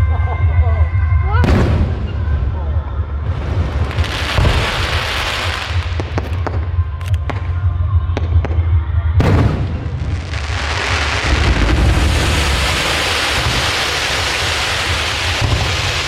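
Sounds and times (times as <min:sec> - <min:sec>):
low rumble: 0:00.0 - 0:16.0
fireworks cracking: 0:01.4 - 0:08.6, 0:09.2 - 0:16.0
firework burst: 0:03.3 - 0:06.8, 0:09.2 - 0:16.0.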